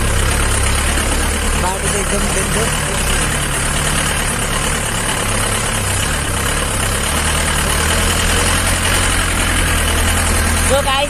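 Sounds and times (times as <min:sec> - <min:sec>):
low engine hum: 0:00.0 - 0:11.0
road noise: 0:00.0 - 0:11.0.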